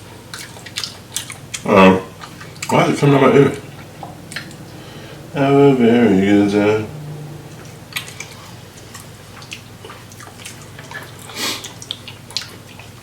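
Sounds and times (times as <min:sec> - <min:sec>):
wet chewing and shell clicks: 0:00.2 - 0:02.8, 0:07.6 - 0:13.0.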